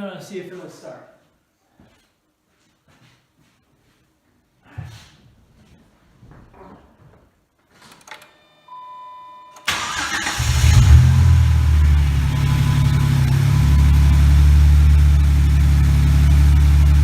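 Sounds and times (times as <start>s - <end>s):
car engine starting and idling: 9.7s - 17.0s
electronic tone: 11.6s - 15.4s.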